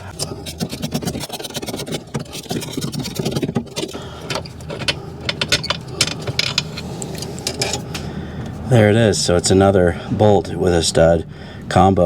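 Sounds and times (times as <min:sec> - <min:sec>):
hand tool clicking on metal: 0:00.2 - 0:08.0.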